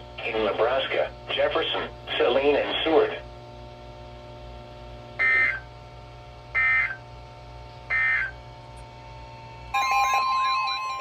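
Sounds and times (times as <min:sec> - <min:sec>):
two-tone digital squawks: 0:05.2 - 0:05.7, 0:06.6 - 0:07.0, 0:07.9 - 0:08.4
warbling alarm: 0:05.2 - 0:05.8, 0:06.5 - 0:07.1, 0:07.9 - 0:08.4, 0:09.6 - 0:11.0.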